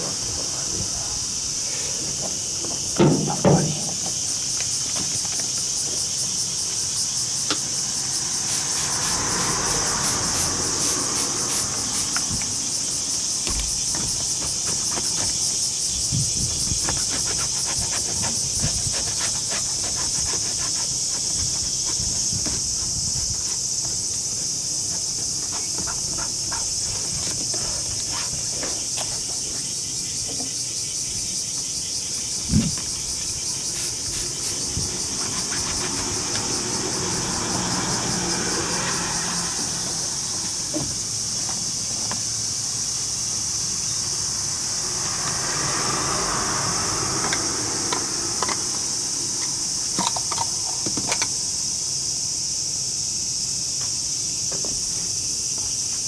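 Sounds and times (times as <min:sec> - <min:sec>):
insects droning: 0:00.0 - 0:56.0
thump: 0:02.6 - 0:04.2.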